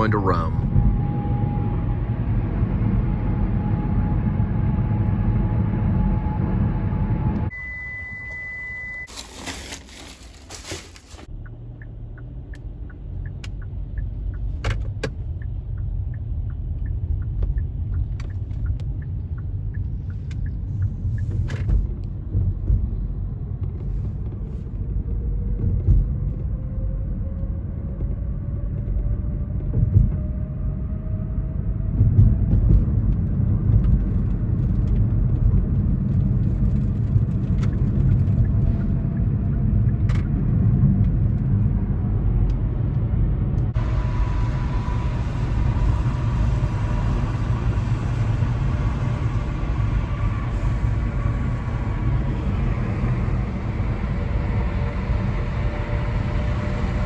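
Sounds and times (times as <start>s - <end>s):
tyre and engine rumble: 0.0s - 7.5s, 9.0s - 57.0s
rising whine: 0.0s - 9.1s, 38.2s - 57.0s
turn signal ticking: 11.3s - 23.0s, 37.4s - 41.1s.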